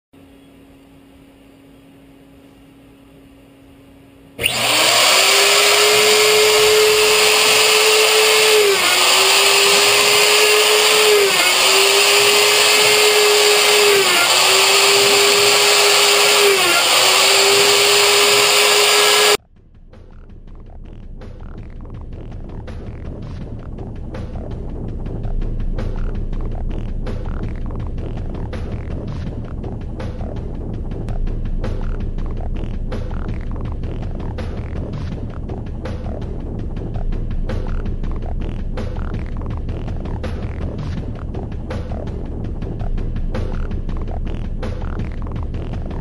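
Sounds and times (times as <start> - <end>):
router spindle cutting metal: 4.4 - 19.4.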